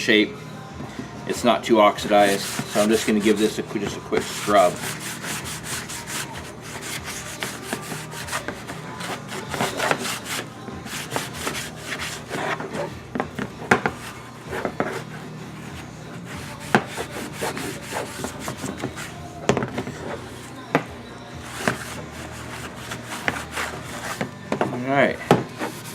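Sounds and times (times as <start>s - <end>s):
scrub pad rubbing plastic: 2.0s - 12.9s, 13.8s - 19.2s, 21.5s - 24.3s, 25.5s - 25.9s.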